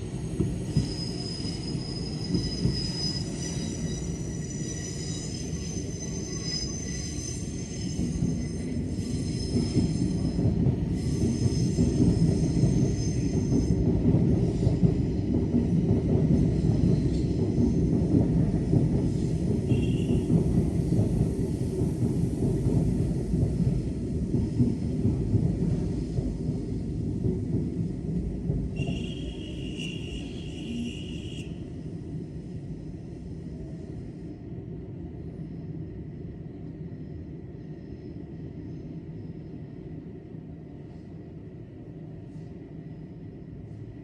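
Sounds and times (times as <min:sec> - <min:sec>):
train rumbling past: 0:00.0 - 0:44.0
high wheel squeal: 0:00.6 - 0:13.8, 0:28.8 - 0:31.6.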